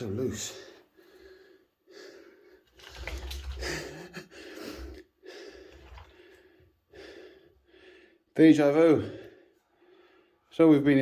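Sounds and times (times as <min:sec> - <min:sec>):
person breathing heavily: 0:00.6 - 0:02.6, 0:03.6 - 0:08.3, 0:09.2 - 0:10.5.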